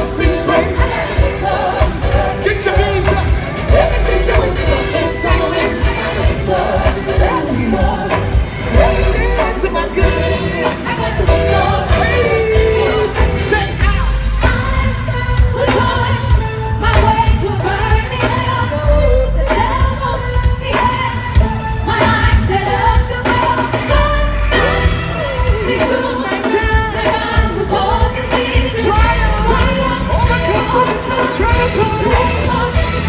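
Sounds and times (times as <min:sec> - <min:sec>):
live gospel band: 0:00.0 - 0:33.0.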